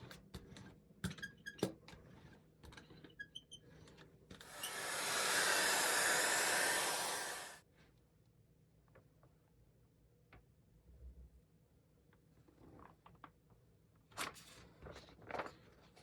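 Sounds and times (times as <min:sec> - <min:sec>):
hair dryer blowing: 0:04.5 - 0:07.6.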